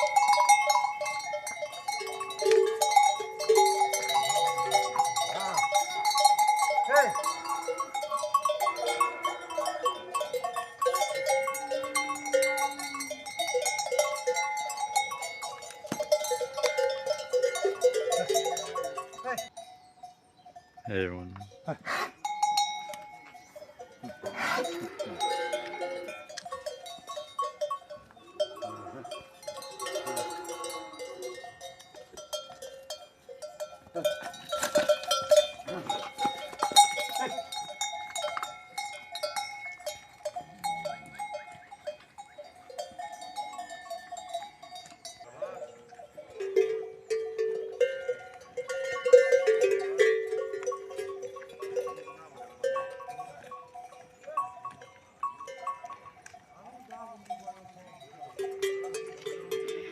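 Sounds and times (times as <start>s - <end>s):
cattle bells clanking: 0.0s - 59.9s
livestock calling: 1.7s - 14.4s.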